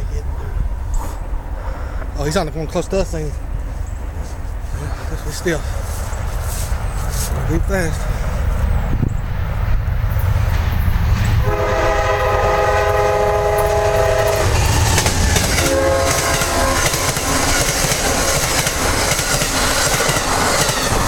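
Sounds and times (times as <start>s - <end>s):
train rumble and wheel clatter: 0.0s - 21.0s
locomotive horn blasts: 11.4s - 14.7s, 15.4s - 17.4s.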